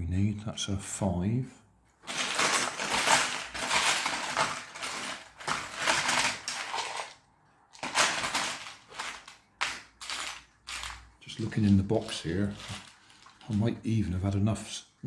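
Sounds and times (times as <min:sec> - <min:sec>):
metal parts clattering and jingling: 0:02.0 - 0:13.7.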